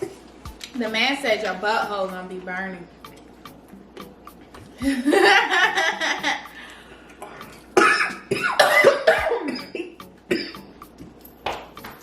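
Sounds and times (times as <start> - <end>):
person coughing harshly: 7.8 - 10.7.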